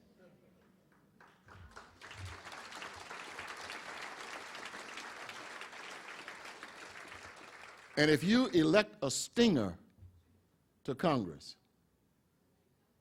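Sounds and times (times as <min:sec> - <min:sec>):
audience applauding: 0:01.2 - 0:08.2.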